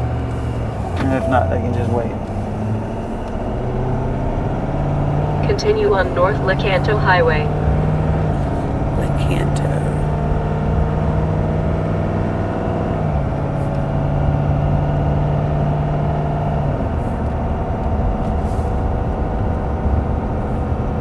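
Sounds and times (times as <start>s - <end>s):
road rumble: 0.0s - 21.0s
truck engine drone: 0.0s - 21.0s.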